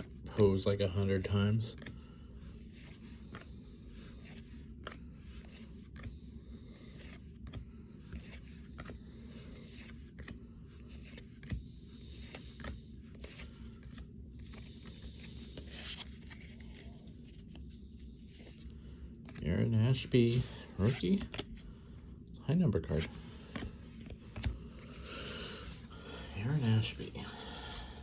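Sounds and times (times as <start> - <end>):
trading cards being flipped: 1.7 - 19.4, 20.0 - 21.6, 22.9 - 25.9.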